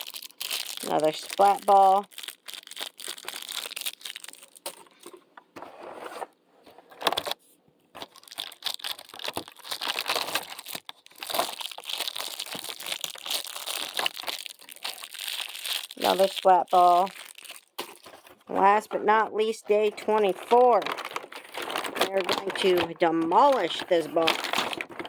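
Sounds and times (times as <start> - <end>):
packaging crinkling and tearing: 0.0 - 5.1, 6.9 - 18.6, 19.7 - 25.0.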